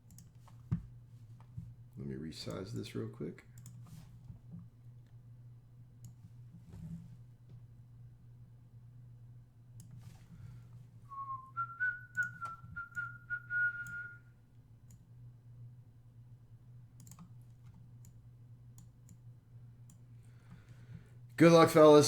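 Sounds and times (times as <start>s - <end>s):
computer mouse clicks: 0.1s - 0.6s, 3.6s - 3.9s, 17.0s - 18.2s, 18.8s - 19.2s
person whistling: 11.1s - 14.2s.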